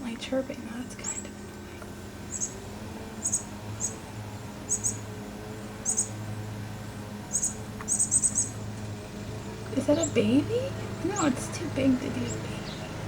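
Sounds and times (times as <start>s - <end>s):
low steady hum: 0.0s - 13.0s
small bird chirping: 1.0s - 6.3s, 7.2s - 13.0s.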